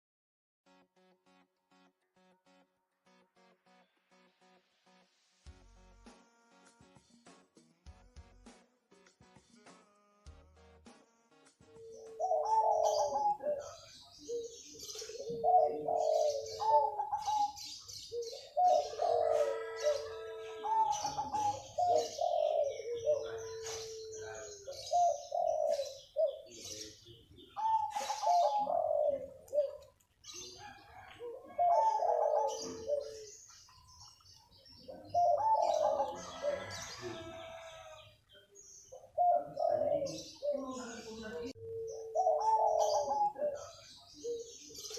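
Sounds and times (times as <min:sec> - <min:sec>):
high chirps of small birds: 0:11.7 - 0:44.9
dove cooing: 0:11.8 - 0:33.9, 0:34.6 - 0:38.1, 0:38.9 - 0:44.9.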